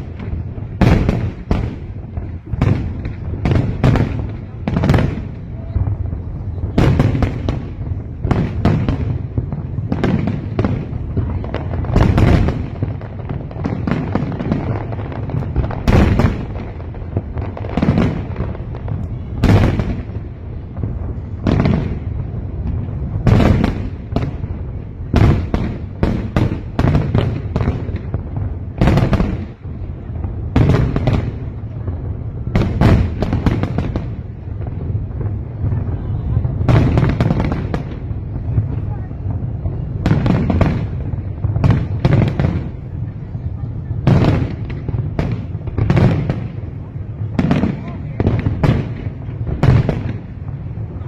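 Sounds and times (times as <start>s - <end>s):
fireworks bursting with sharp bangs: 0.0s - 51.0s.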